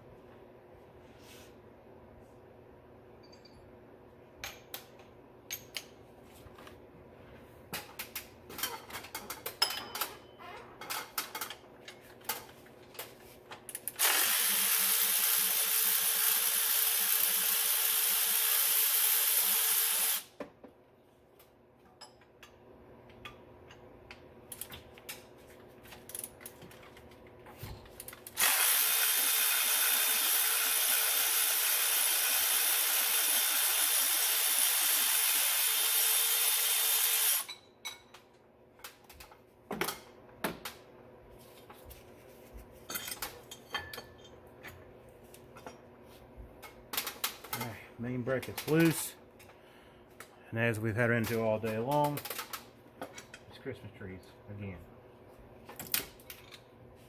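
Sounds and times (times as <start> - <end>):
power tool running: 14.0 - 20.3, 28.4 - 37.5.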